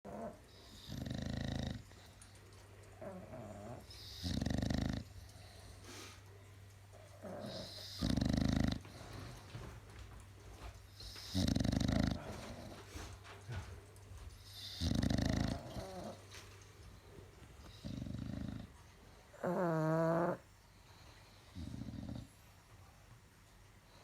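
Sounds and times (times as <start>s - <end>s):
dog snoring: 0.0s - 2.2s, 3.0s - 6.2s, 7.0s - 9.7s, 11.0s - 13.1s, 14.4s - 16.4s, 17.6s - 22.5s.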